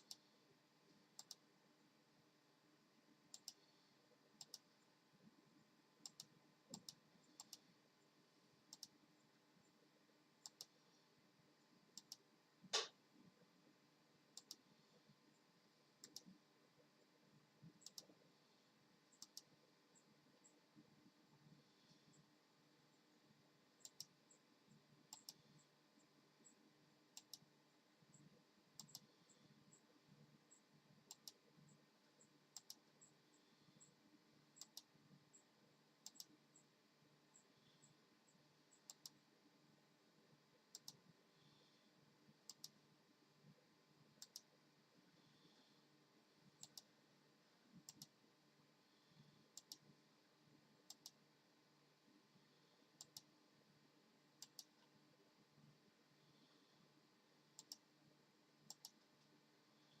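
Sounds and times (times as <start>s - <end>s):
faint sharp clicks: 0.9s - 1.5s, 3.3s - 3.8s, 4.4s - 4.9s, 6.0s - 7.7s, 8.7s - 9.0s, 10.4s - 10.9s, 11.9s - 13.0s, 14.3s - 14.7s, 16.0s - 16.4s, 17.6s - 18.2s, 19.2s - 20.6s, 23.8s - 25.7s, 26.4s - 27.5s, 28.1s - 29.9s, 30.6s - 34.0s, 34.6s - 36.7s, 38.8s - 39.2s, 40.7s - 41.8s, 42.4s - 42.8s, 44.2s - 44.6s, 46.5s - 47.0s, 47.7s - 48.2s, 49.1s - 49.9s, 50.8s - 51.2s, 53.0s - 53.4s, 54.4s - 55.0s, 57.5s - 57.9s, 58.6s - 60.0s.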